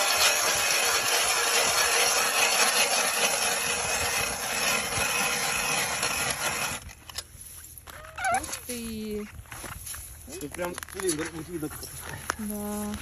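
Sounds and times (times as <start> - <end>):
ice drill grinding into ice: 0.0 - 7.6.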